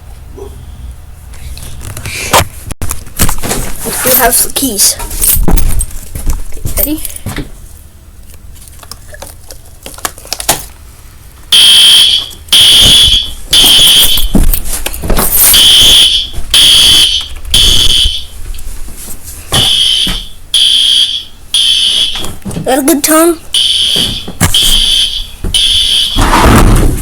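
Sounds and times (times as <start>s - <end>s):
fire alarm pulsing tone: 11.5s - 14.4s, 15.4s - 18.3s, 19.6s - 22.2s, 23.5s - 26.3s.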